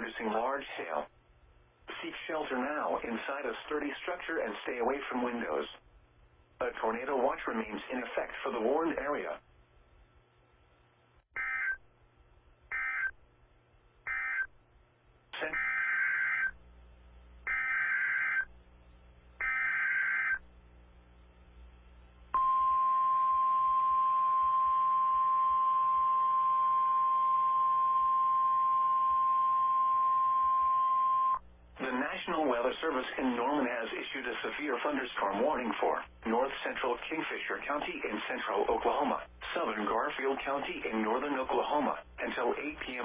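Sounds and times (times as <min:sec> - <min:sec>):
high single-tone warning alarm: 0:11.4 - 0:11.8, 0:12.7 - 0:13.1, 0:14.1 - 0:14.5, 0:15.5 - 0:16.6, 0:17.5 - 0:18.5, 0:19.4 - 0:20.4, 0:22.4 - 0:31.4.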